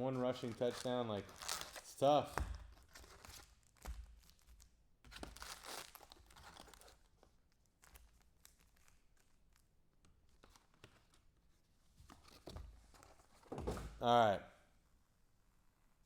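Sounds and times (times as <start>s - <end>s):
wrapper tearing and crinkling: 0.3s - 2.0s, 2.8s - 9.6s.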